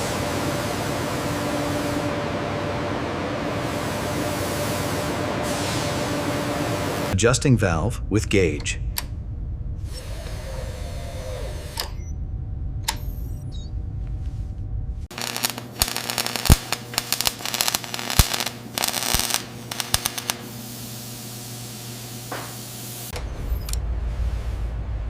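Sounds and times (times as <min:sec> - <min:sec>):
low rumble: 0:07.0 - 0:16.1, 0:23.1 - 0:25.0
steady hiss: 0:15.1 - 0:23.1.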